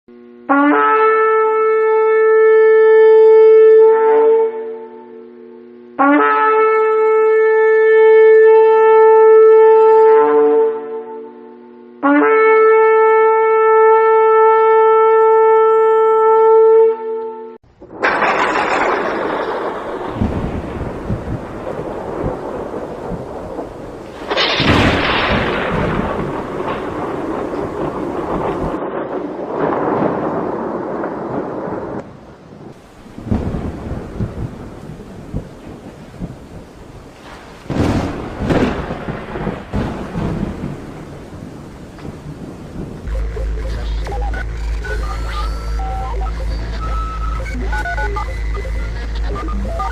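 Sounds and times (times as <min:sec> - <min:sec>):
ram's horn blast: 0:00.1 - 0:17.6
rain: 0:17.7 - 0:49.9
thunder rumbling: 0:17.7 - 0:49.9.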